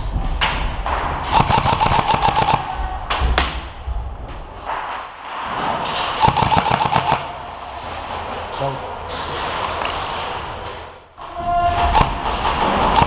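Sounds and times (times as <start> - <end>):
airsoft gun firing bursts: 1.3 - 2.7, 6.2 - 7.3.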